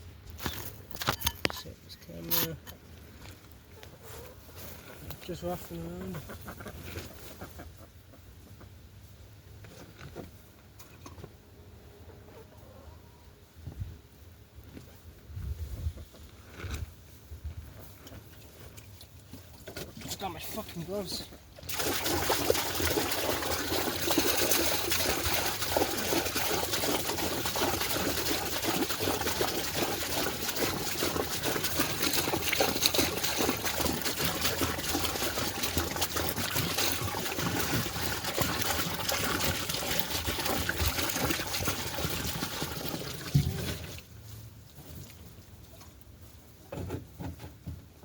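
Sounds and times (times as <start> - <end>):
water pouring into a tub: 19.8 - 44.1.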